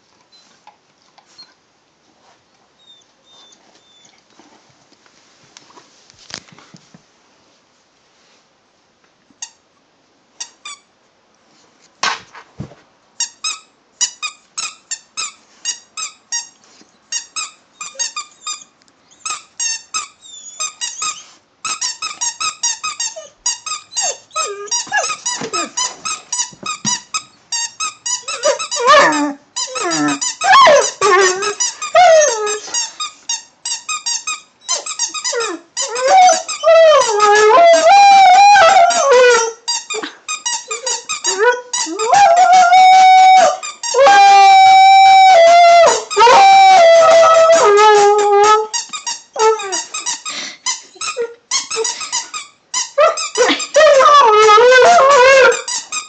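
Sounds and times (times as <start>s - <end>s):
rubber squeaky toy squeaking: 13.2s - 56.0s
husky vocalising: 28.3s - 32.8s, 53.0s - 55.7s.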